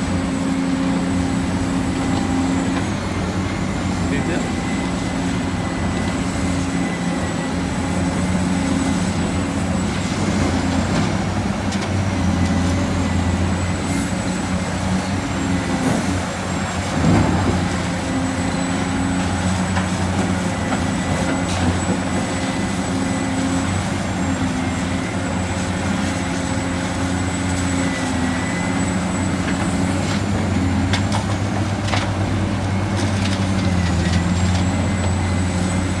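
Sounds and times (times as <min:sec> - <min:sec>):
heavy diesel engine running: 0:00.0 - 0:36.0
machinery clunk: 0:15.7 - 0:18.0.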